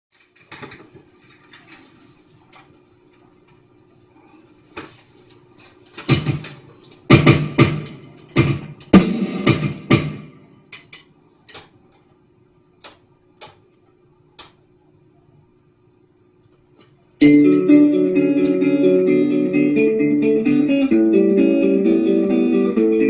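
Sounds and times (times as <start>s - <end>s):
drum hits: 6.1s - 10.5s
cymbal crashes: 9.0s - 10.4s.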